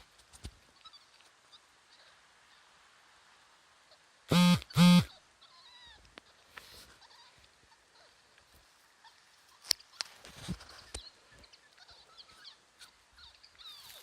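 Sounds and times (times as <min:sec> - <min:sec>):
faint bird chirps: 0:00.6 - 0:03.1, 0:08.8 - 0:14.0.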